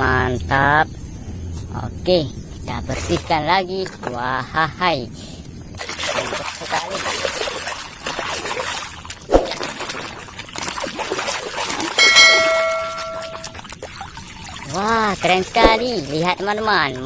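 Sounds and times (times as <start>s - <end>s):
water splashing and trickling: 5.8s - 17.0s
clear bell-like ring: 12.0s - 13.6s.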